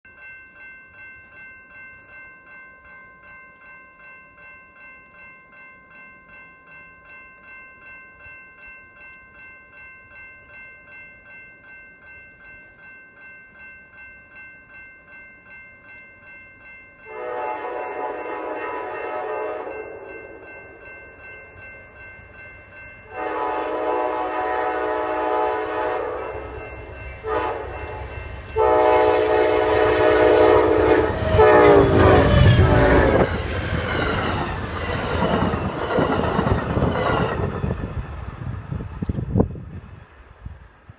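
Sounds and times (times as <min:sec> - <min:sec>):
pulsing ringing bell: 0:00.0 - 0:38.7
train horn blasts: 0:17.1 - 0:20.5, 0:23.1 - 0:33.3.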